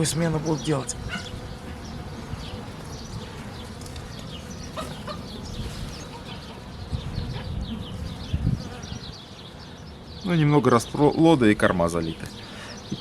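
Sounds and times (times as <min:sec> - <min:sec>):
small birds chirping: 0:00.0 - 0:13.0
wind rumble on microphone: 0:06.8 - 0:09.2.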